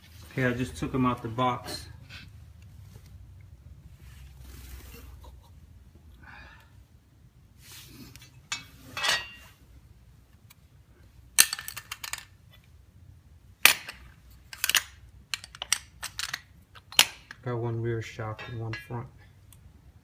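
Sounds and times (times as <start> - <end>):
metal parts rustling and scraping: 7.7 - 9.6, 11.4 - 12.7, 13.6 - 17.4
metal clanking on metal: 8.5 - 9.5, 18.4 - 19.1.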